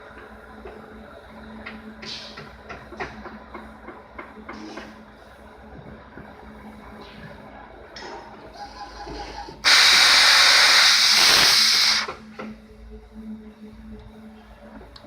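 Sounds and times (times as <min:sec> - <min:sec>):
plasma cutter torch hissing: 0:09.6 - 0:12.2.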